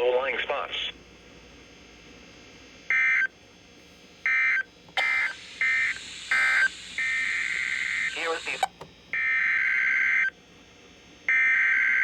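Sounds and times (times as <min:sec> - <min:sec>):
faint radio hiss: 0:05.0 - 0:08.8
harsh two-tone data warbles: 0:05.0 - 0:08.8.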